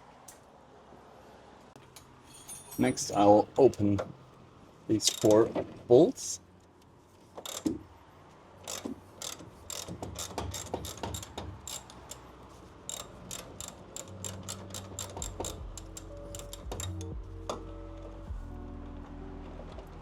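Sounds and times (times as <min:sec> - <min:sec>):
ratchet wrench clicking: 0:05.0 - 0:05.4, 0:07.4 - 0:07.8, 0:08.6 - 0:17.3
low music tones: 0:14.4 - 0:20.0.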